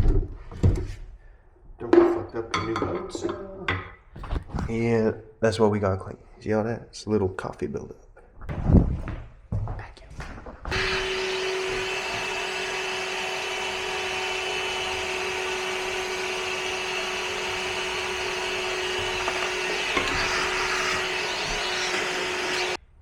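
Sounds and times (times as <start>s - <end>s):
vacuum cleaner running: 10.7s - 22.8s.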